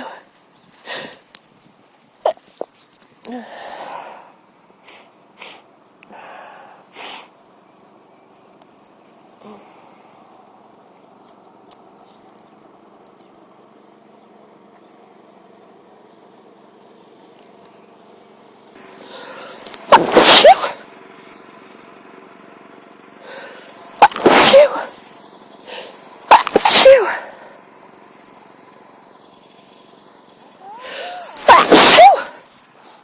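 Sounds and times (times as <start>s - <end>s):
in-breath before sneeze: 19.0s - 20.8s, 23.3s - 25.0s, 25.7s - 27.5s, 30.7s - 33.0s
woman sneezing: 19.9s - 20.8s, 24.0s - 25.0s, 26.3s - 27.5s, 30.6s - 32.4s.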